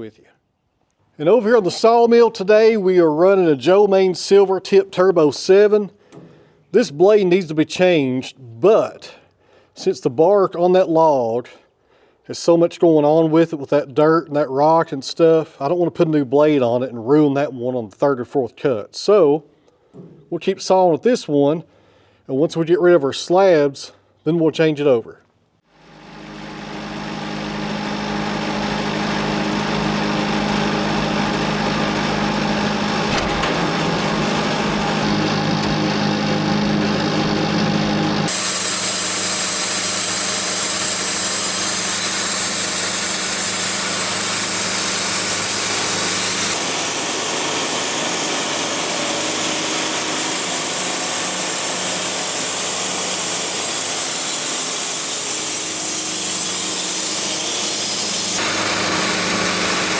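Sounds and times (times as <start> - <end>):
band sawmill cutting log: 25.8 - 59.9.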